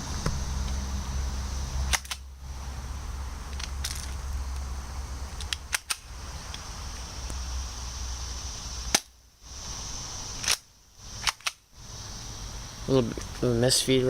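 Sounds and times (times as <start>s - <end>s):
low rumble: 0.0s - 5.4s.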